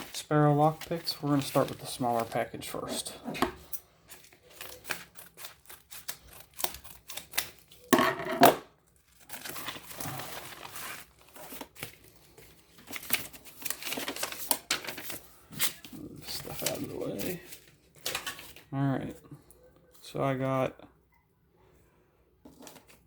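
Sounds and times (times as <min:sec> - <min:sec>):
packaging rustling: 0:00.0 - 0:03.1, 0:08.8 - 0:18.7
packaging tearing: 0:04.2 - 0:07.9, 0:09.0 - 0:18.6.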